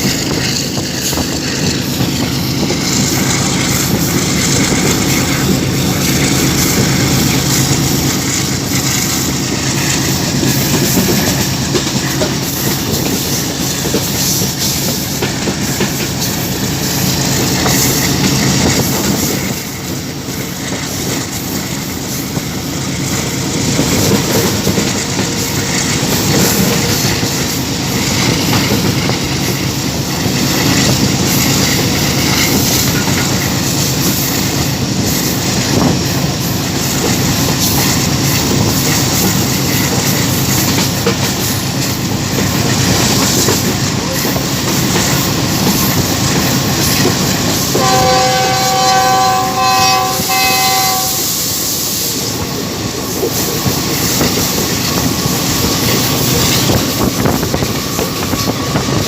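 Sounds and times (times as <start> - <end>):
diesel locomotive running: 0.0 - 59.0
train wheels clattering over rail joints: 0.0 - 59.0.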